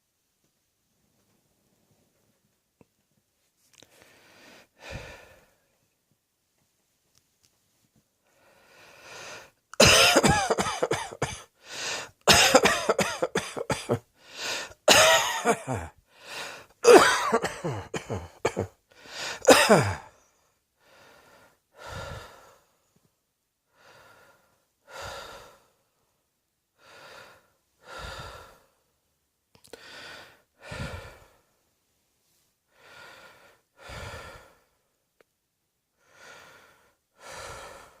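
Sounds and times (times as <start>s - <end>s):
person breathing slowly: 3.8s - 5.9s, 8.2s - 9.6s, 11.6s - 12.2s, 14.2s - 14.8s, 15.7s - 16.8s, 18.9s - 19.5s, 20.1s - 23.0s, 23.7s - 26.1s, 26.8s - 28.9s, 29.6s - 31.6s, 32.3s - 35.0s, 36.0s - 38.0s.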